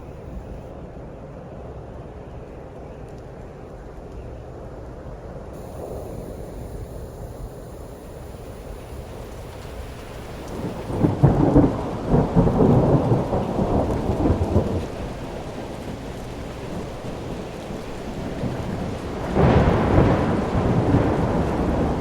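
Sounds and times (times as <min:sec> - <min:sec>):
steady rain: 0:00.0 - 0:00.8, 0:01.4 - 0:22.0
rolling thunder: 0:05.6 - 0:22.0.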